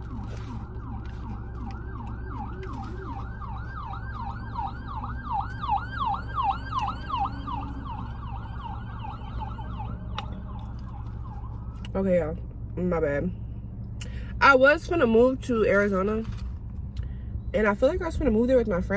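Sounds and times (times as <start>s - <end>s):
siren yelping: 0.0s - 12.0s.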